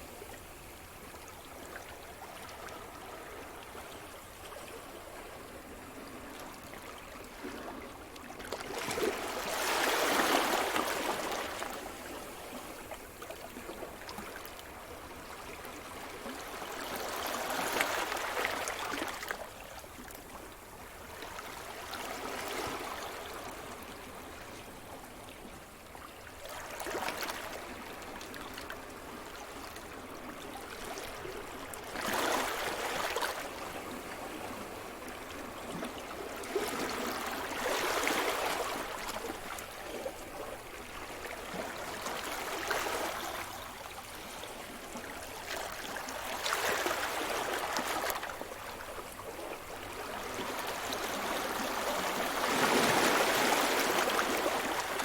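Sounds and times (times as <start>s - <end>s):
waves breaking on shore: 31.8s - 55.0s.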